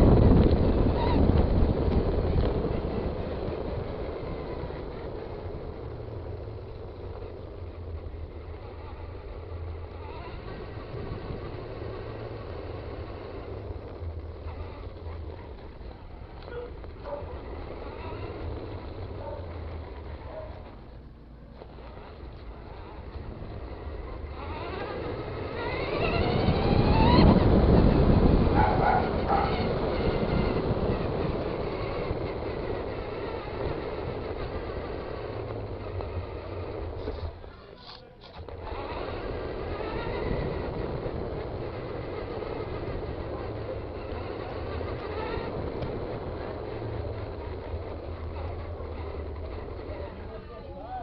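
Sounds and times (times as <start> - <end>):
electric toy car motor whine: 0.0 - 51.0
tyre and wind rumble: 0.0 - 51.0.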